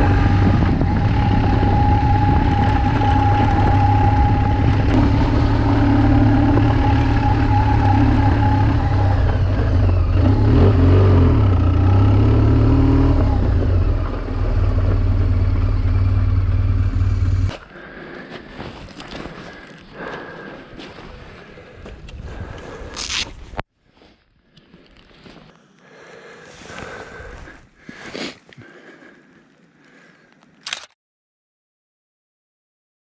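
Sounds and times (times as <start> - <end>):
motorcycle engine running: 0.0 - 17.5.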